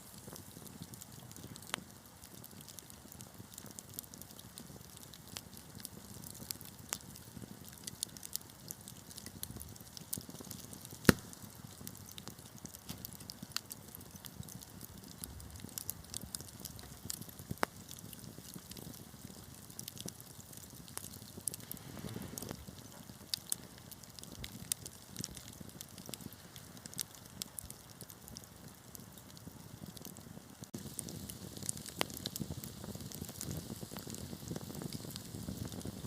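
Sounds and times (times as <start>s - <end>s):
low rumble of flames: 0.0s - 36.0s
wood fire crackling and popping: 0.0s - 36.0s
sharp loud snap of fire: 10.9s - 13.3s, 20.6s - 24.8s.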